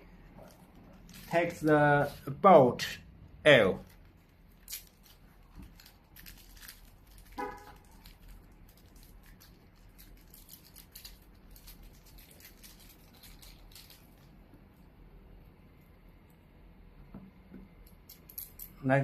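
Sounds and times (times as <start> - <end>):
small clicks and scrapes of parts: 3.9 - 14.4.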